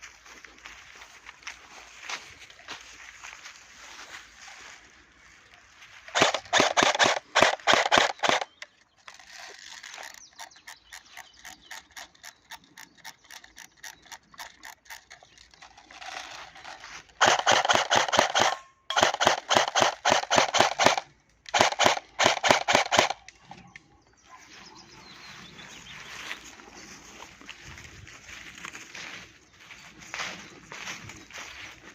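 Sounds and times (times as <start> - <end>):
airsoft gun firing full auto: 6.1 - 8.6, 17.2 - 23.2
quick regular ticking: 6.1 - 23.3.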